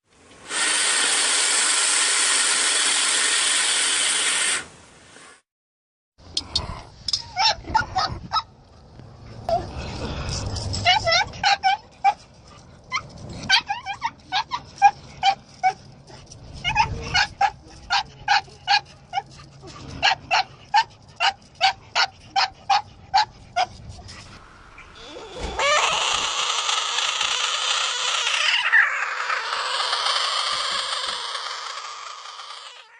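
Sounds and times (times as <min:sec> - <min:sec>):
creature yelping barks: 0:07.2 - 0:08.5, 0:10.8 - 0:12.2, 0:12.9 - 0:15.8, 0:16.6 - 0:23.7, 0:24.9 - 0:32.9
creature raspy cry: 0:25.0 - 0:32.9.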